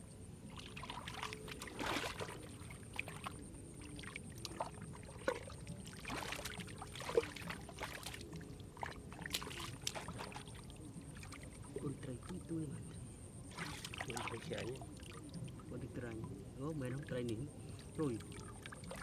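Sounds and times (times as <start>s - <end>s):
hands splashing in muddy water: 6.0s - 8.3s, 9.2s - 10.5s.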